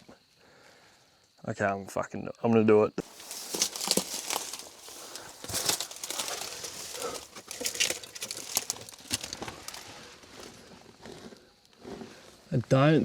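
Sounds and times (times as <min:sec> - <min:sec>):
clothing rustling: 0:03.0 - 0:10.0
boots and hands scraping rock: 0:03.0 - 0:12.2.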